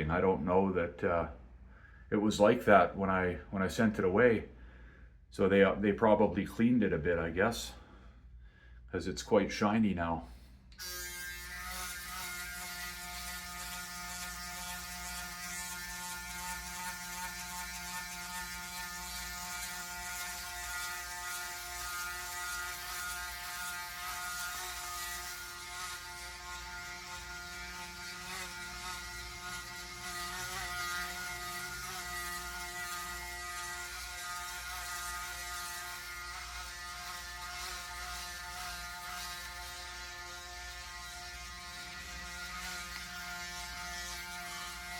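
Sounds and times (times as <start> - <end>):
electric shaver buzzing: 10.7 - 44.9.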